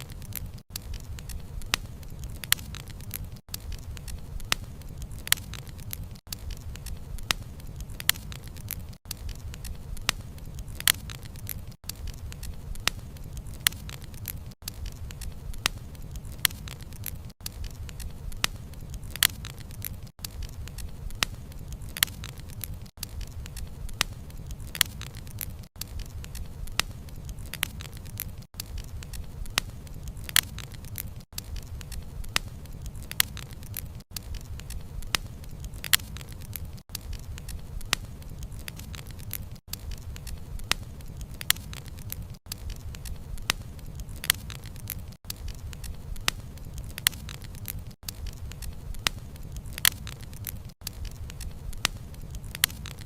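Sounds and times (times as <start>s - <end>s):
firewood popping and crackling: 0.0s - 53.0s
low rumble of flames: 0.0s - 53.0s.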